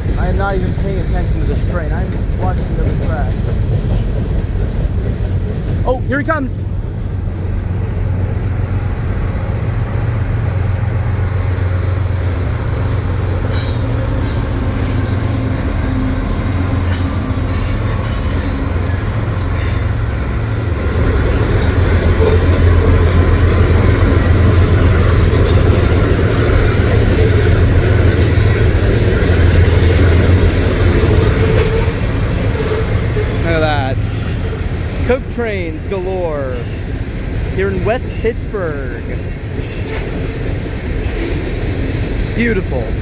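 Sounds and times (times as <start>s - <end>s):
diesel locomotive engine rumble: 0.0s - 43.0s
rail wheels squealing: 12.7s - 20.7s, 22.2s - 35.0s, 35.9s - 41.6s.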